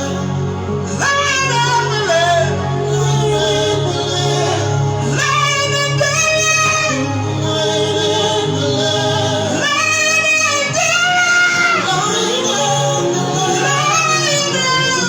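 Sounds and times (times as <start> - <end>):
sustained instrumental backing: 0.0 - 15.0
woman singing: 0.0 - 15.0.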